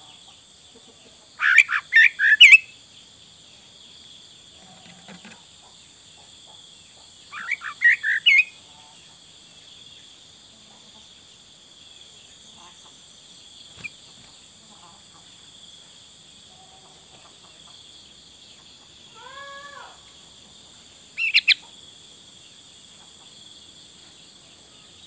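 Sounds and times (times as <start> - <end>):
bird singing whistled notes: 1.4 - 2.8, 7.3 - 8.6, 21.2 - 21.6.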